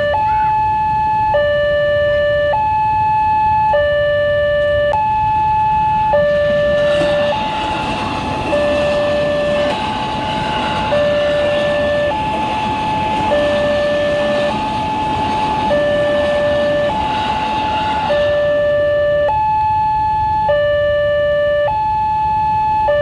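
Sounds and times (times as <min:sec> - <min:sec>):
level-crossing two-tone alarm: 0:00.0 - 0:23.0
train passing: 0:05.1 - 0:19.4.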